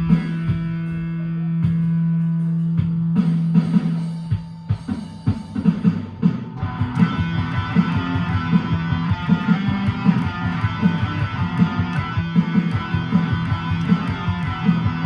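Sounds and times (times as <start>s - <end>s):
backing track: 0.0s - 15.0s
guitar low plucked notes: 6.6s - 15.0s.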